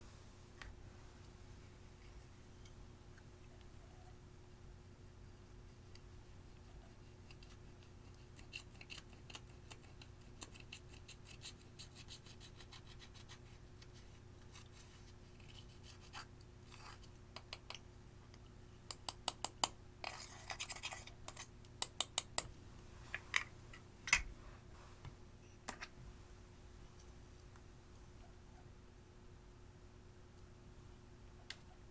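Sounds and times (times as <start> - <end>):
eyeshadow scratching: 6.3 - 17.1, 20.0 - 21.5.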